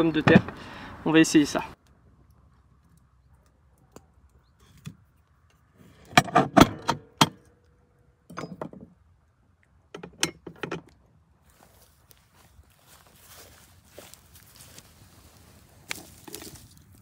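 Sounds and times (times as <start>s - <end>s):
metal clanks and clinks: 6.0s - 7.4s, 8.3s - 8.9s.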